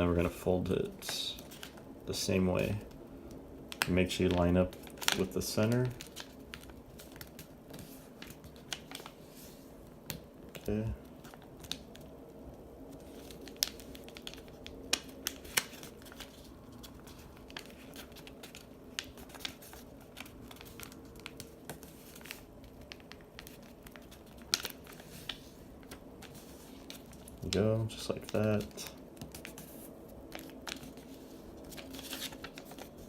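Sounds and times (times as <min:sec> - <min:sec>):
paper folding and crinkling: 0:00.0 - 0:03.0, 0:03.7 - 0:12.2, 0:12.8 - 0:33.0.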